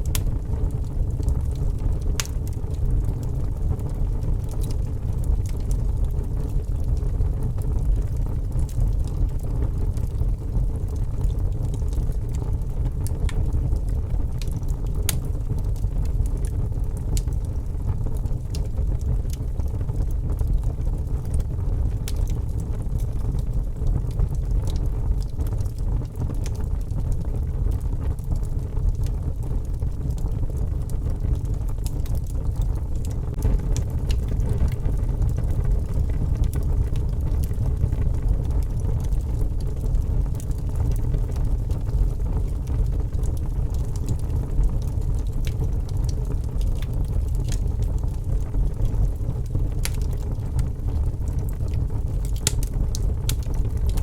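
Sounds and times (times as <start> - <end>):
wood fire crackling: 0.0 - 54.0
low rumble: 28.9 - 40.0
sharp pops of fire: 52.2 - 54.0.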